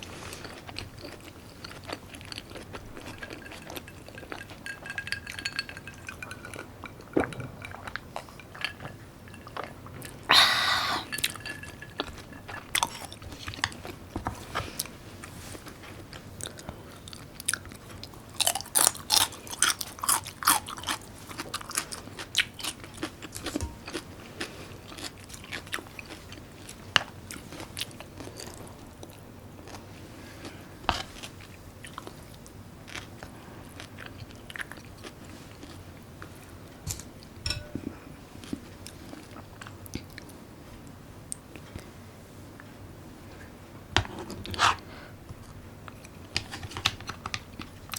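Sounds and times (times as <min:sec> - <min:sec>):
person chewing food: 0:00.0 - 0:14.9, 0:16.1 - 0:37.1.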